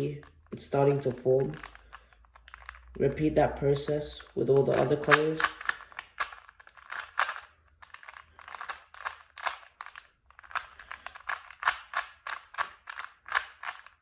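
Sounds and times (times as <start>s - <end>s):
puzzle cube clicking: 0.0s - 14.0s.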